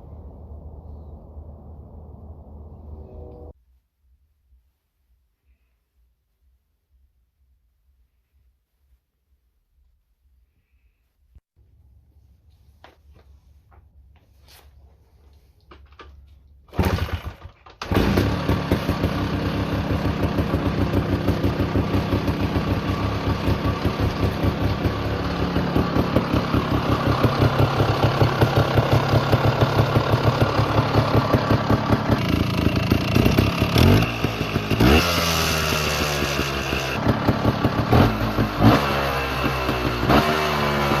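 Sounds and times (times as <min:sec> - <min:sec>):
motorcycle engine idling: 0:16.8 - 0:41.0.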